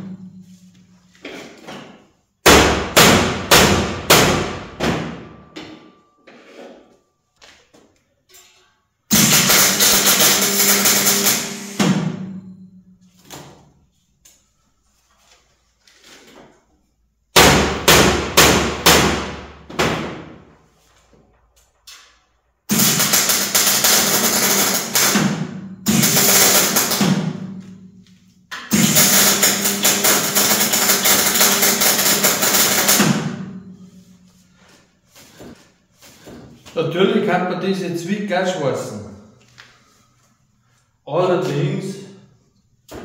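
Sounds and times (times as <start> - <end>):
hammer blows on sheet metal: 2.4 - 6.1, 9.1 - 12.6, 17.4 - 20.7, 22.7 - 27.9.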